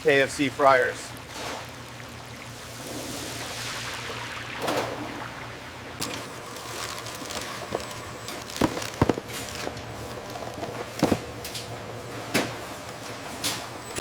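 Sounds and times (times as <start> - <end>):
deep fryer sizzling: 0.0 - 14.0
sharp knocks and clatters: 6.0 - 11.7.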